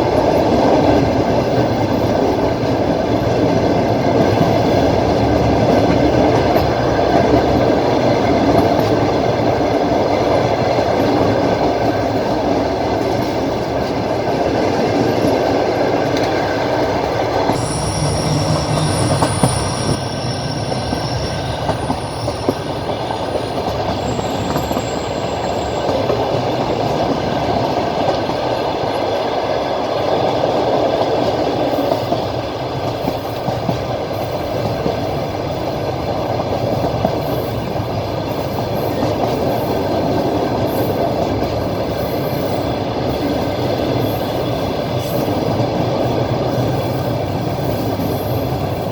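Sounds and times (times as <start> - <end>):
train wheels rumbling on rails: 0.0 - 48.9
high wheel squeal: 17.5 - 26.6.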